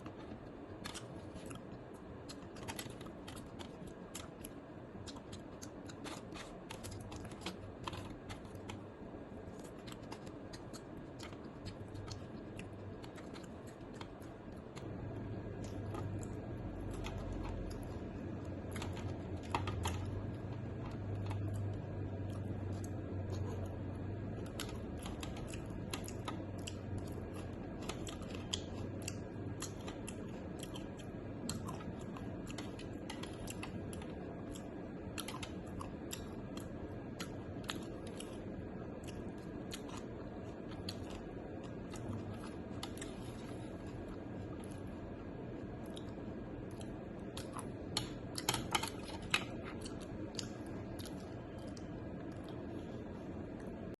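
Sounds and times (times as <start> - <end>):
person chewing with crunches: 0.0 - 53.9.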